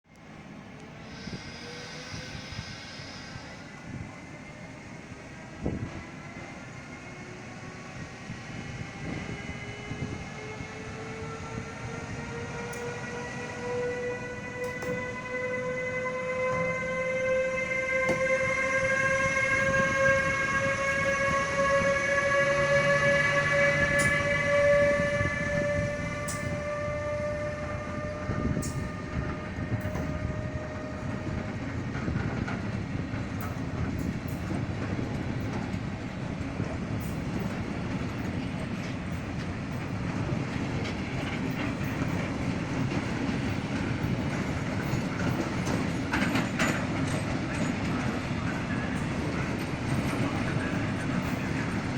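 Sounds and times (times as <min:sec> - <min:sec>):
train horn: 0:01.0 - 0:04.0, 0:11.0 - 0:31.7
train wheels clattering on rails: 0:08.9 - 0:15.7, 0:17.7 - 0:51.9.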